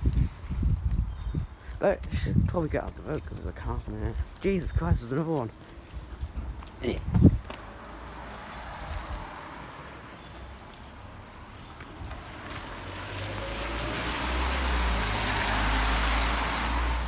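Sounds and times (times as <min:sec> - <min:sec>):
heavy rain: 0:11.7 - 0:17.0.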